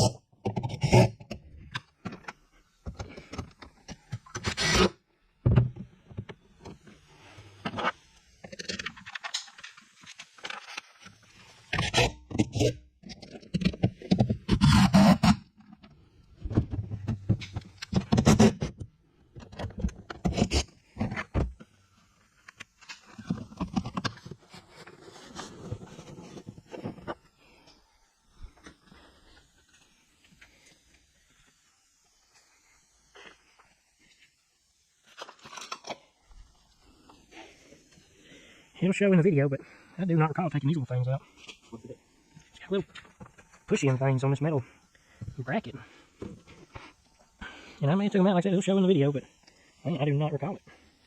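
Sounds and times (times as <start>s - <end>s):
scraping and clicking car parts: 0.0s - 21.7s, 22.4s - 27.2s.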